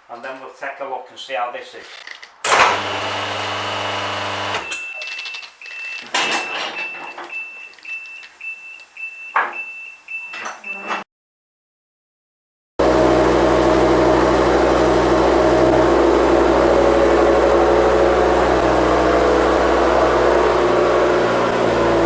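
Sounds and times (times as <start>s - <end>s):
machine humming: 2.5s - 4.6s, 12.8s - 22.0s.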